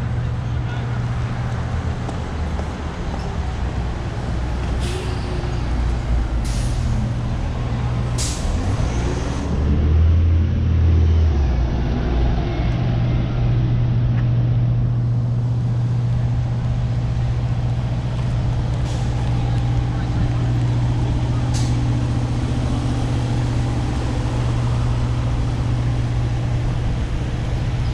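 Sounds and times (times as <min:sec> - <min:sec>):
large vehicle engine droning: 0:00.0 - 0:27.9
short air hisses: 0:06.4 - 0:06.9.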